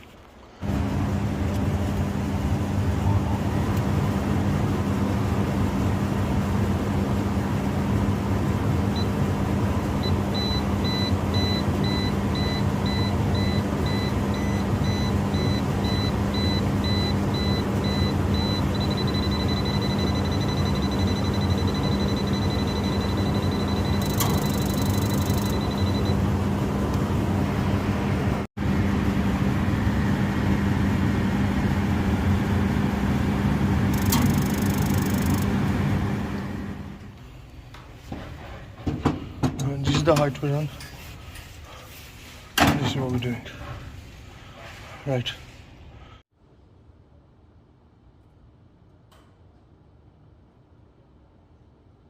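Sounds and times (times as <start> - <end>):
low machinery hum: 0.2 - 46.2
high electronic beeping: 10.4 - 26.2, 33.9 - 35.5.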